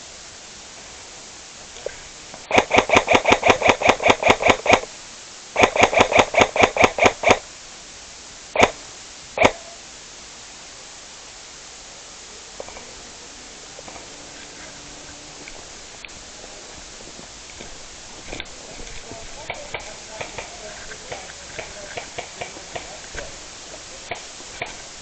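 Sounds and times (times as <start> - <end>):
airsoft gun firing: 2.5 - 4.9, 5.6 - 7.5, 8.6 - 8.8, 9.4 - 9.8, 17.6 - 25.0.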